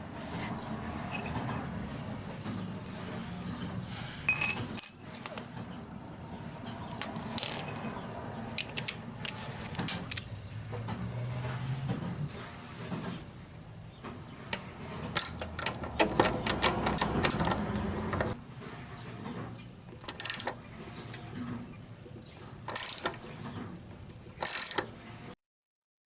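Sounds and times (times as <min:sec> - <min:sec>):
tools clicking and clattering: 0:01.0 - 0:01.8, 0:02.4 - 0:05.8, 0:06.6 - 0:11.0, 0:14.5 - 0:18.4, 0:19.3 - 0:20.6, 0:22.6 - 0:25.0.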